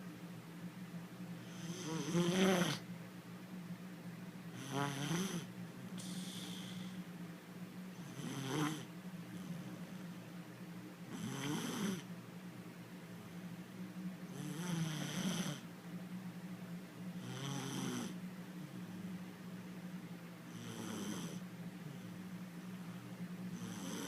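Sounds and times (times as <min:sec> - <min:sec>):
steady low hum: 0:00.0 - 0:24.0
girl snoring: 0:01.4 - 0:02.8, 0:04.6 - 0:07.0, 0:08.1 - 0:08.9, 0:11.1 - 0:12.1, 0:14.3 - 0:15.6, 0:17.2 - 0:18.2, 0:23.6 - 0:24.0.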